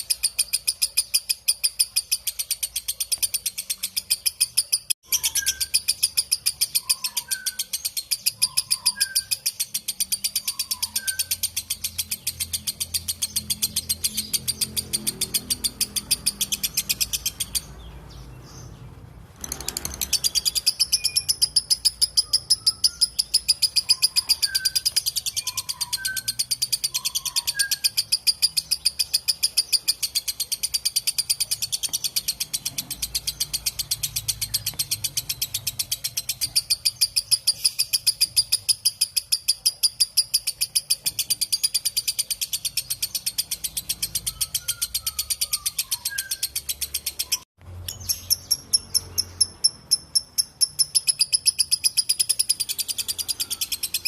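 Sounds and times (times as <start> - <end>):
lovebird shrill chatter: 4.0 - 17.7, 19.4 - 41.8.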